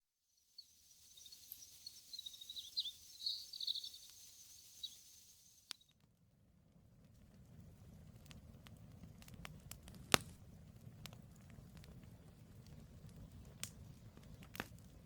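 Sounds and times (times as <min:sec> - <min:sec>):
small birds chirping: 0:00.3 - 0:05.9
campfire pop: 0:07.0 - 0:15.0.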